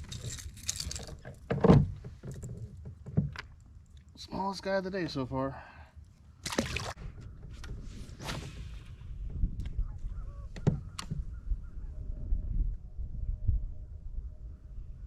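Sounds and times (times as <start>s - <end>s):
distant birds calling: 9.7s - 12.0s.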